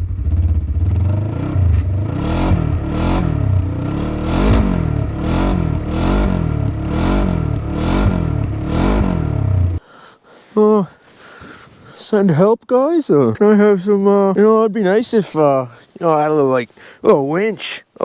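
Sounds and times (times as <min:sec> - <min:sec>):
side-by-side engine revving: 0:00.0 - 0:09.8.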